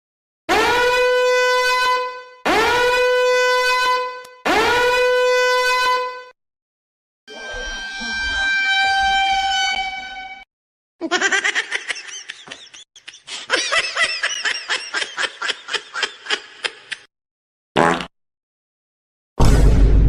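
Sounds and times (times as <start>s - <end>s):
horn-like blare: 0.5s - 6.4s, 7.3s - 10.5s.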